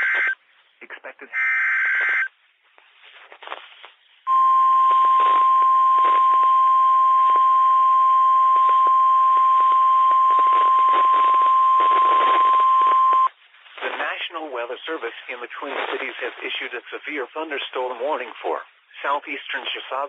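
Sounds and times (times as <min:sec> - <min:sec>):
faint radio static: 0:00.0 - 0:20.0
steady alarm beep: 0:04.3 - 0:13.3.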